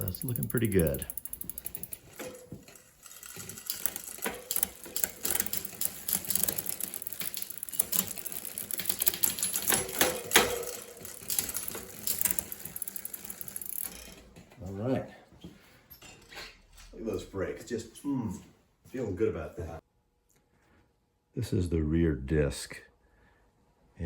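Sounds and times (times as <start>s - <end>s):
freewheel ratcheting: 0.0s - 14.3s
bicycle chain clicking: 0.0s - 14.4s.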